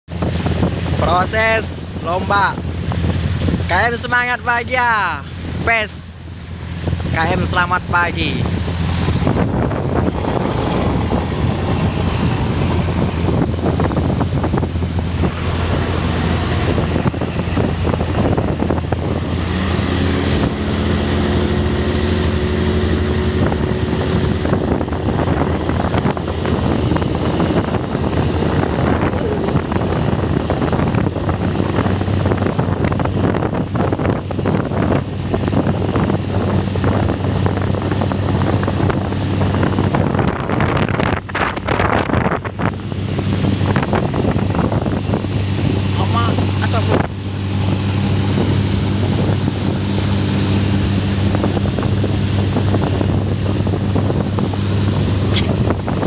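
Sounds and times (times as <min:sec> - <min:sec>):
boat engine running: 0:00.0 - 0:56.0
wind buffeting microphone: 0:00.1 - 0:56.0.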